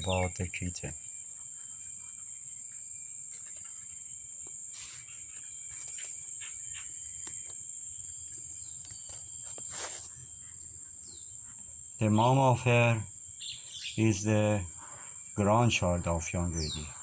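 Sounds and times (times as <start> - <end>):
crickets chirring: 0.0 - 17.0
faint bird chirp: 0.0 - 17.0
rustling: 8.4 - 11.5.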